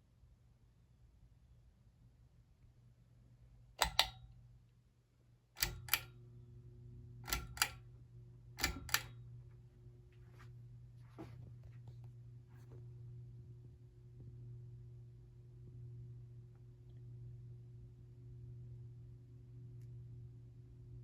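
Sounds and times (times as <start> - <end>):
fan motor low hum: 3.0 - 21.0
pull-chain switch clicking: 3.8 - 4.3, 5.6 - 6.1, 7.2 - 7.8, 8.6 - 9.2.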